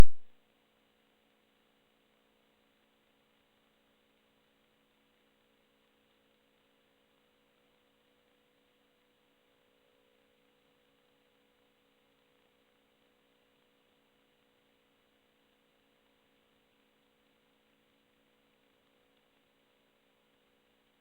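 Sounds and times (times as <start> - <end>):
faint steady hum: 0.0 - 0.3
low hiss: 0.0 - 0.3.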